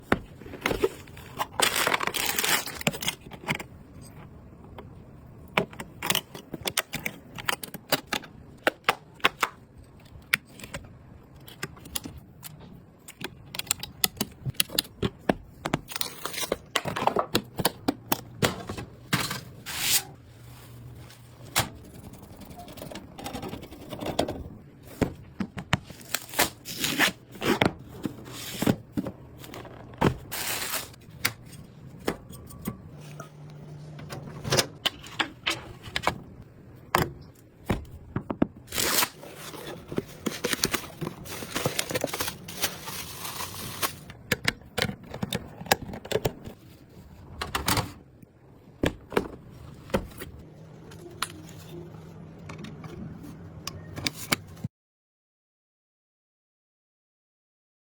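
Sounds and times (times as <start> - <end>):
packaging rustling: 0.4 - 3.5, 25.8 - 31.8, 38.6 - 44.2.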